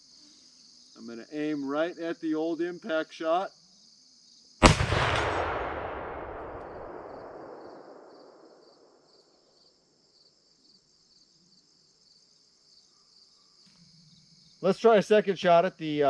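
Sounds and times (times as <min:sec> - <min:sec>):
crickets chirping: 0:00.0 - 0:16.0
gunshot rolling echo: 0:04.6 - 0:08.6.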